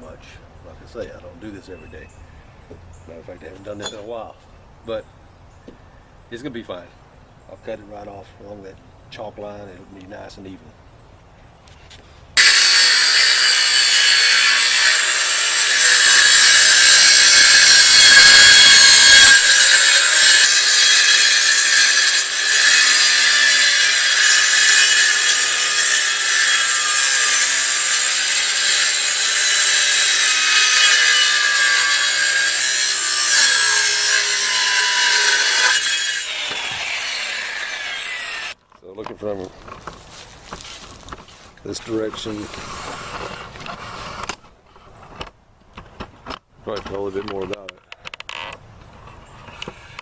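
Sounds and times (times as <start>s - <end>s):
circular saw cutting boards: 12.4s - 38.6s.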